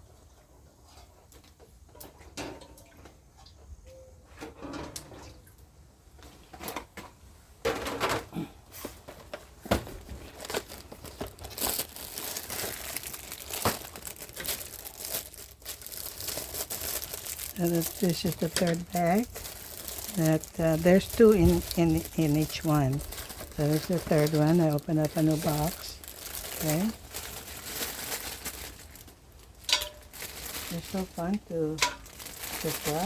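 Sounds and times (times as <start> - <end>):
plastic bag crinkling: 9.8 - 33.0.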